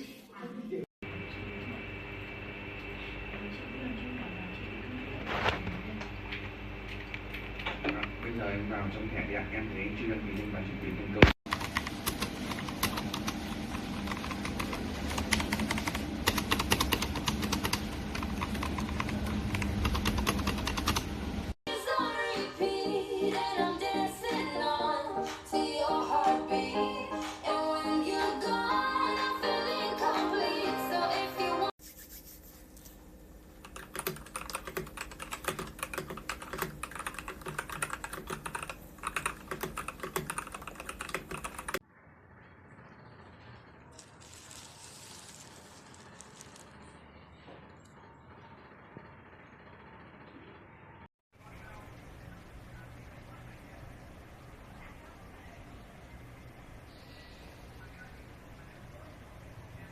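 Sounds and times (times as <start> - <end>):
mechanical keyboard typing: 11.5 - 21.1, 33.6 - 41.8.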